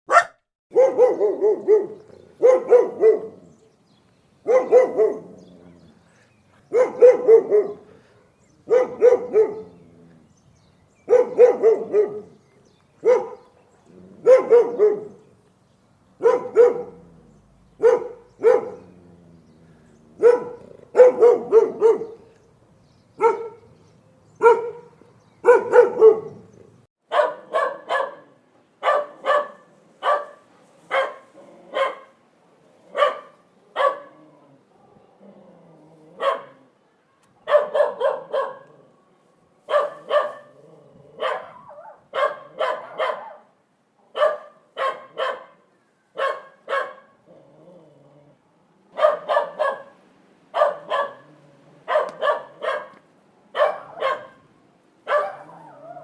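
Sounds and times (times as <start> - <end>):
dog barking: 0.1 - 3.5, 4.4 - 5.3, 6.7 - 8.1, 8.7 - 9.8, 11.1 - 12.4, 13.0 - 13.5, 14.2 - 15.2, 16.2 - 17.1, 17.8 - 19.0, 20.2 - 22.3, 23.2 - 23.7, 24.4 - 26.5, 27.1 - 32.2, 32.9 - 34.2, 36.2 - 36.6, 37.4 - 38.7, 39.7 - 40.6, 41.2 - 43.5, 44.1 - 47.2, 48.9 - 56.0.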